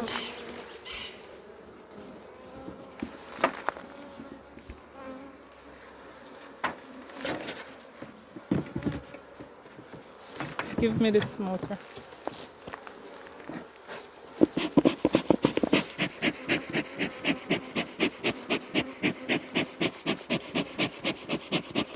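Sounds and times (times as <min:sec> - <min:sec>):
honey bees buzzing: 0:12.6 - 0:21.9
sharp knocks and clicks: 0:14.4 - 0:15.9.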